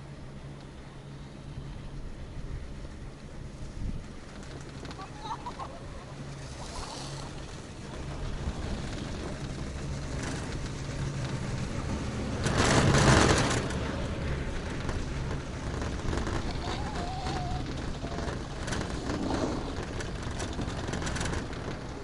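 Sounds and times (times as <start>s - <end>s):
chairlift humming: 0.0s - 22.0s
rushing rumble: 0.0s - 22.0s
wind noise: 3.5s - 22.0s.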